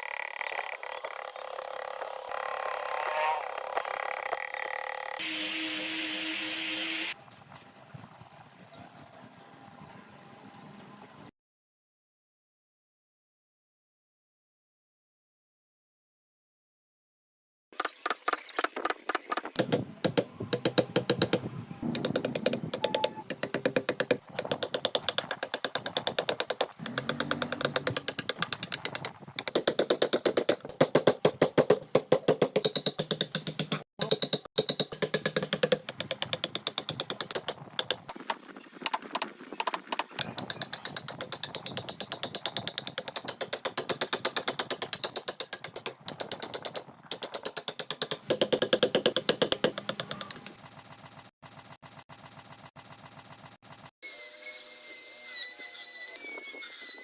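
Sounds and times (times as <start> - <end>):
chisel tapping on wood: 19.6 - 38.0, 40.2 - 50.6.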